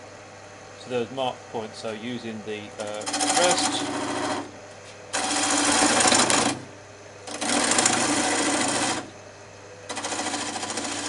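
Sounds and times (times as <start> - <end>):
wood lathe humming: 2.7 - 9.2, 9.9 - 11.0
turning tool cutting wood: 2.8 - 4.5, 5.1 - 6.7, 7.3 - 9.1, 9.9 - 11.0.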